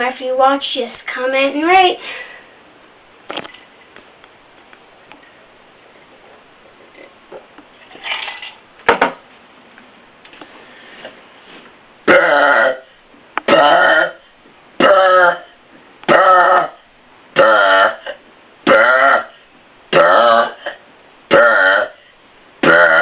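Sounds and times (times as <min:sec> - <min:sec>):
man burping loudly: 0:12.0 - 0:16.8, 0:17.4 - 0:23.0.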